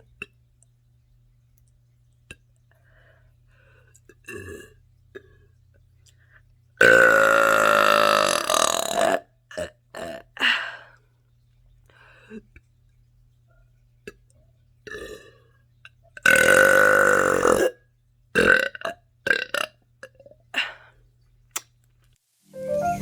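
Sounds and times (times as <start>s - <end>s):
woman burping loudly: 6.8s - 10.4s, 16.2s - 17.8s, 18.4s - 20.2s
short soft sounds: 22.6s - 23.0s.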